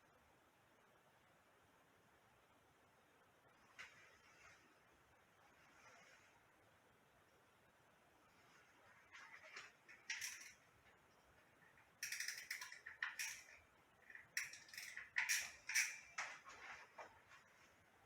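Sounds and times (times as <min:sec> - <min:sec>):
small hard parts rattling: 0:09.1 - 0:16.7.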